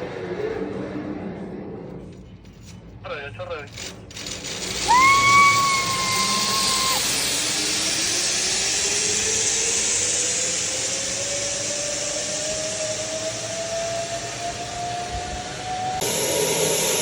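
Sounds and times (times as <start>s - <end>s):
zipline pulleys whirring on cable: 3.8s - 17.0s.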